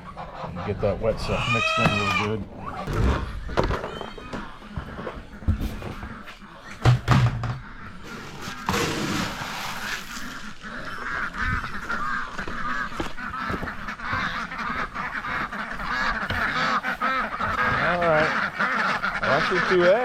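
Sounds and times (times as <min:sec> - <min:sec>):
poultry honking and quacking: 0:00.0 - 0:20.0
loud knocks: 0:06.8 - 0:07.7.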